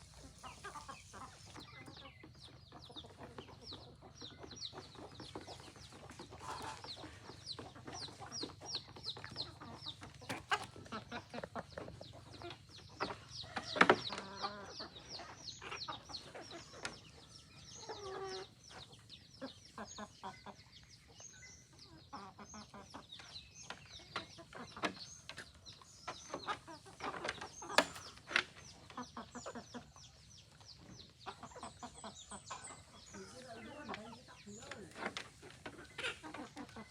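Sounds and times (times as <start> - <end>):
chickens clucking: 0.0 - 36.9
chicks peeping: 0.0 - 36.9
sharp knocks: 27.8 - 28.1.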